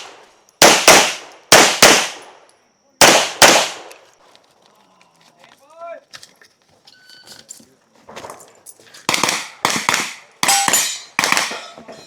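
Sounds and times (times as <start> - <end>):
pistol shots with metallic ringing: 0.0 - 4.0, 9.1 - 11.8.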